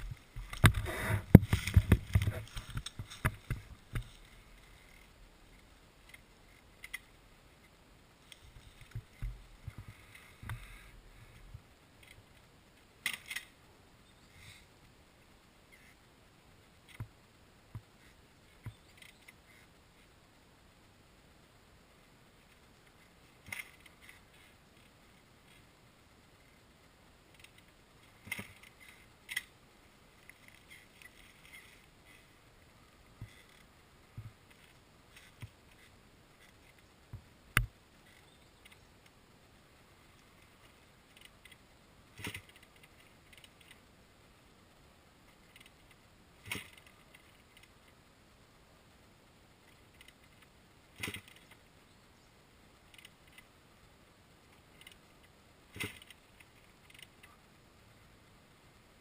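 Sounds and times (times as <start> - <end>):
small clicks and rattles: 22.4 - 25.6, 27.2 - 29.6, 40.2 - 43.9, 45.3 - 48.0, 49.6 - 51.7, 52.8 - 53.5, 54.5 - 57.4.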